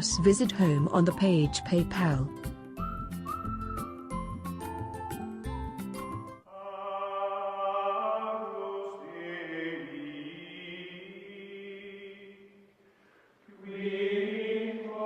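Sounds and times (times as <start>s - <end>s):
choir holding long notes: 6.5s - 12.4s, 13.5s - 15.0s.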